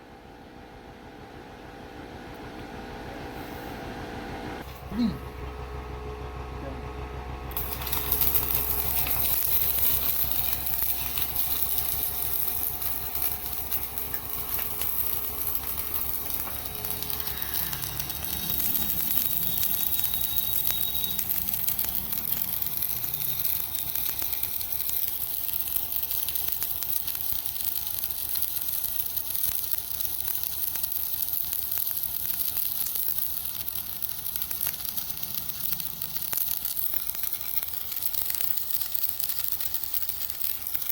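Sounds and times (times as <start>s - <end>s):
welding arc sizzling and crackling: 7.4s - 40.9s.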